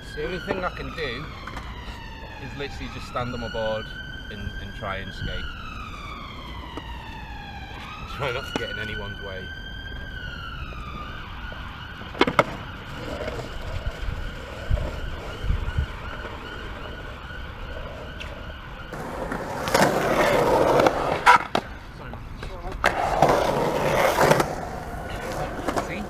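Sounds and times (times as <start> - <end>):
distant siren wailing: 0.0 - 26.0
skateboard clacks: 8.4 - 8.8, 12.1 - 17.2, 17.8 - 26.0
skateboard rolling on hard ground: 12.1 - 21.7, 22.4 - 26.0.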